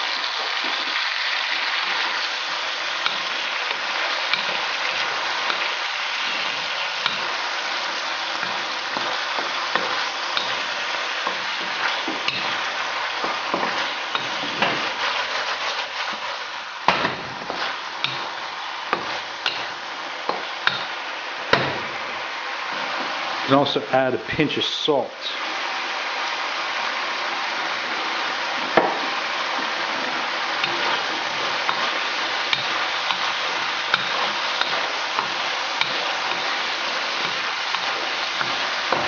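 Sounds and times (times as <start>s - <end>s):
chicken sizzling in a pan: 0.0s - 23.5s, 24.9s - 39.0s
utensil scraping a pan: 2.9s - 20.9s, 29.5s - 39.0s.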